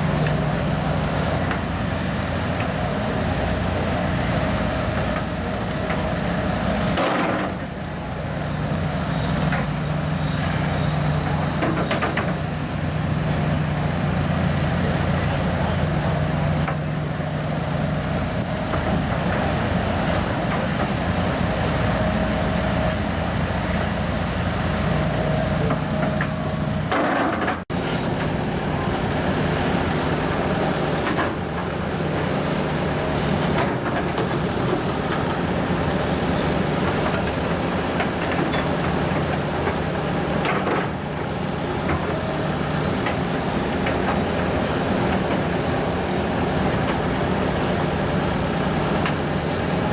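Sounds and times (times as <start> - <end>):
excavator diesel engine running: 0.0 - 49.9
short hydraulic hisses: 8.8 - 12.4, 27.7 - 28.6.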